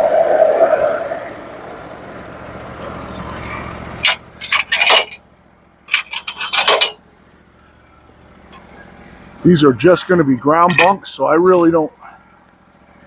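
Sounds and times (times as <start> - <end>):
metallic clattering knocks: 5.9 - 7.3.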